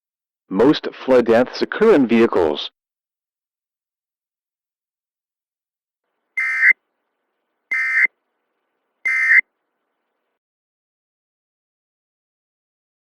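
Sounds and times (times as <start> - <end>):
digital data tone bursts: 6.4 - 6.7, 7.7 - 8.1, 9.1 - 9.4.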